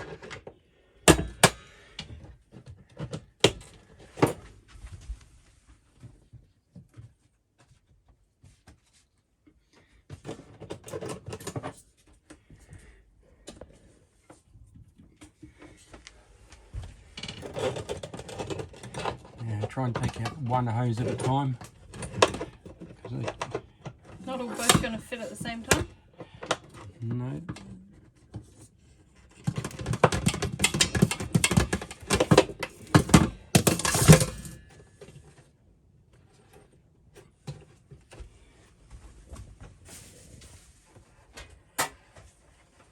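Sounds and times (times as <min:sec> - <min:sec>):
knocks clicks and scraping: 0:17.2 - 0:28.6, 0:29.2 - 0:34.7
metal scraping and rattling: 0:29.5 - 0:34.7.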